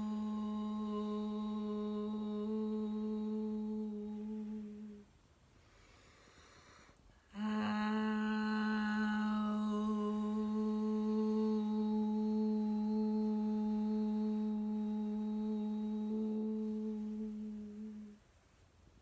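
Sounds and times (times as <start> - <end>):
woman humming steady tone: 0.0 - 5.2, 7.2 - 18.3
soft in-breath: 5.5 - 7.3.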